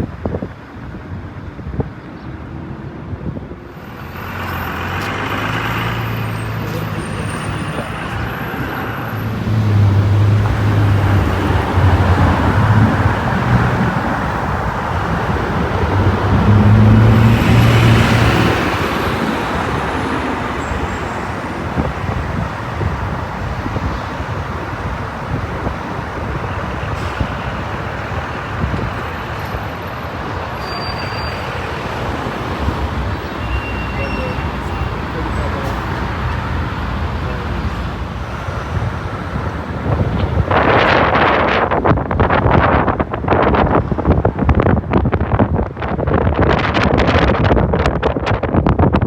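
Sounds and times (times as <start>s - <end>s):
passing vehicles rushing: 0.0s - 49.0s
low engine hum: 4.8s - 28.1s.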